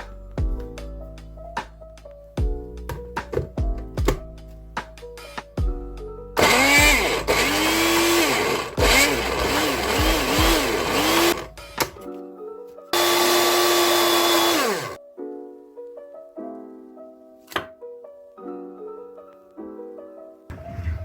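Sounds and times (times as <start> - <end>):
soft piano music: 0.0 - 6.4, 11.5 - 13.0, 15.0 - 20.5
blender motor whirring: 6.4 - 11.5, 13.0 - 15.0.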